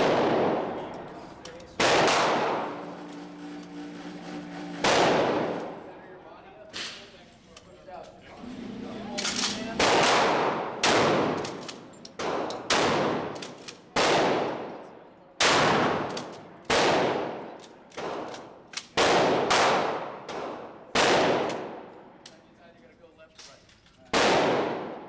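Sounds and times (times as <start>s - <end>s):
echoing gunshots: 0.0s - 3.0s, 4.7s - 5.8s, 9.2s - 14.7s, 15.4s - 16.1s, 16.7s - 17.4s, 19.0s - 21.9s, 24.1s - 25.0s.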